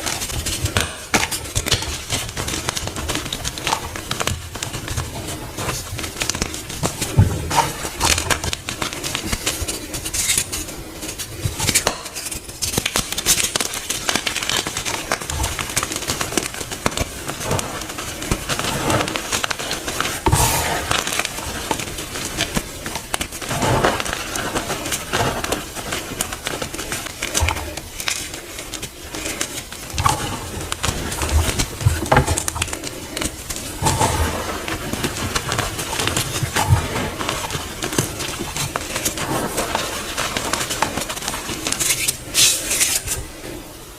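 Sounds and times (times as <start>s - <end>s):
powder blocks crunching: 12.6s - 42.9s.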